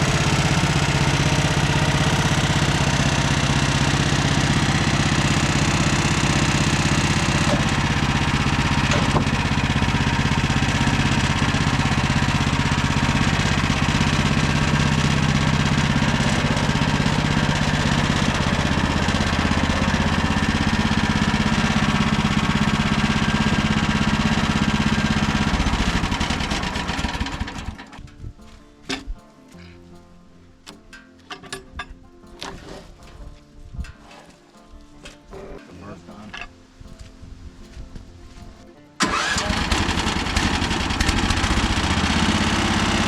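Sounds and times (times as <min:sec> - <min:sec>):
bandsaw mill engine running: 0:00.0 - 0:28.2, 0:39.0 - 0:43.0.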